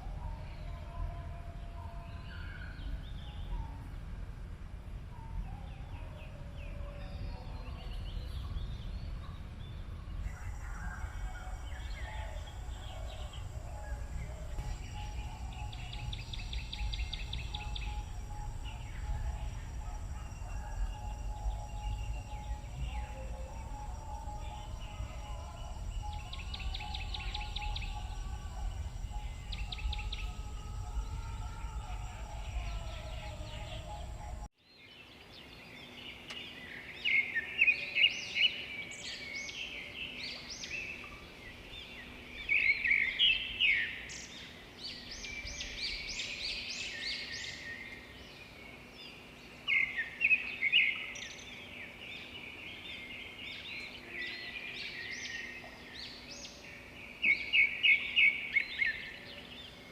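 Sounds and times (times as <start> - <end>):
songbirds singing: 0.0 - 59.9
low rumble: 7.1 - 34.5.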